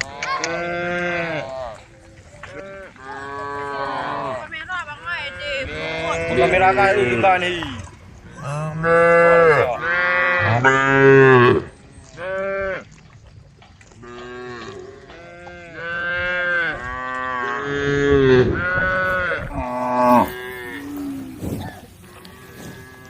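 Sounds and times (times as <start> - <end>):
cattle mooing: 5.7 - 12.8, 14.0 - 23.0.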